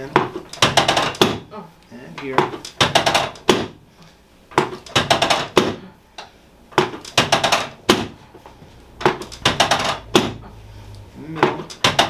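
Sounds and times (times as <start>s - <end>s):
rapid tapping on body: 0.2s - 1.5s, 2.2s - 3.8s, 4.5s - 5.8s, 6.7s - 8.2s, 9.0s - 10.4s, 11.4s - 12.0s.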